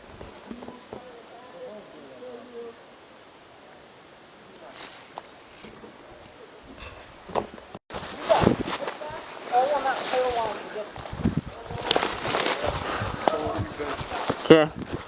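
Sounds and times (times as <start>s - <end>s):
insects trilling: 0.0s - 7.8s.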